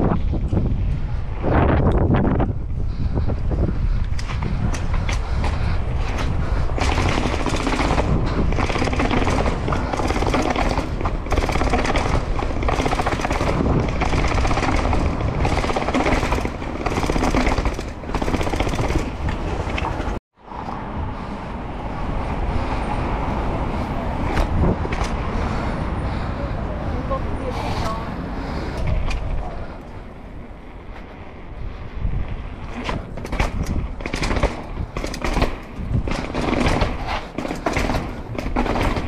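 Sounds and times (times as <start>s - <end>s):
mountain bike rattling: 0.0s - 20.2s, 32.1s - 39.0s
wind on microphone: 0.0s - 39.0s.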